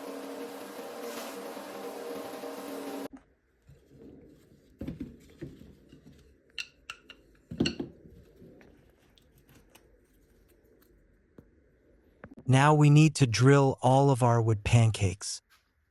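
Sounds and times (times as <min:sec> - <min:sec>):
power tool motor running: 0:00.0 - 0:03.1.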